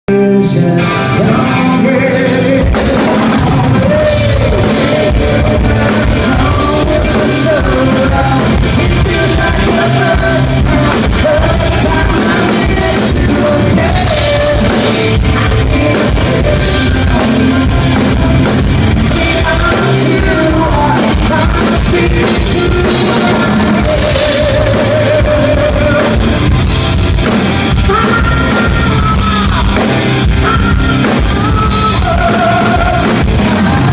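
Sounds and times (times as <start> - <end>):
guitar: 0.0 - 33.9
person singing: 0.0 - 33.9
drum kit: 0.1 - 33.9.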